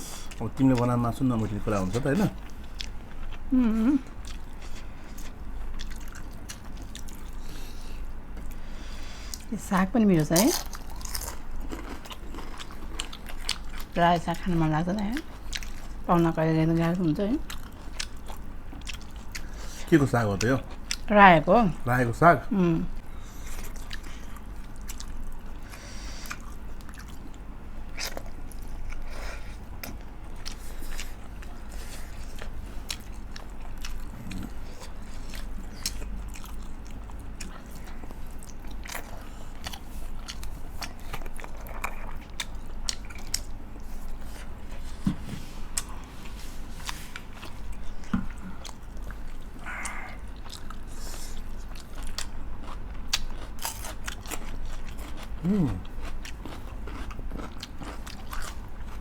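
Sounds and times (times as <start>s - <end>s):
chewing and mouth smacks: 2.4s - 7.4s, 15.2s - 16.0s, 17.4s - 19.6s, 23.4s - 29.1s, 29.7s - 59.0s.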